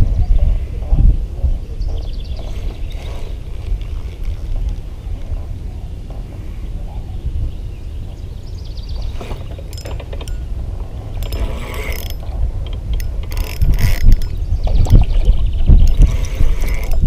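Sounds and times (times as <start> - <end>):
wind rumble on microphone: 0.0 - 17.0
fishing reel ratcheting: 9.6 - 10.5, 11.1 - 14.5, 15.8 - 17.0.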